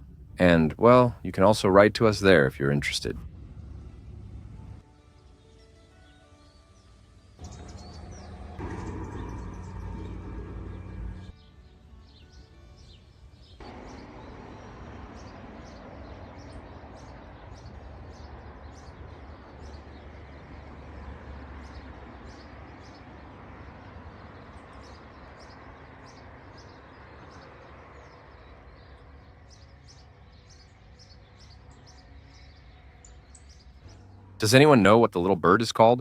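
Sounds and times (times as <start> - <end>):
outdoor hiss and low rumble: 0.0 - 4.8
small songbird chirping: 4.5 - 36.0.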